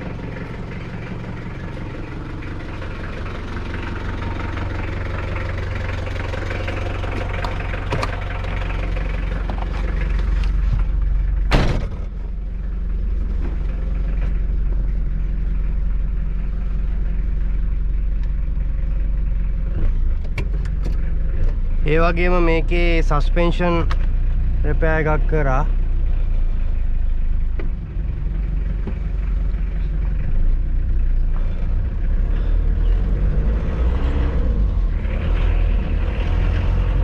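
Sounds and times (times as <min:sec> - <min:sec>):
diesel engine running: 0:00.0 - 0:37.0.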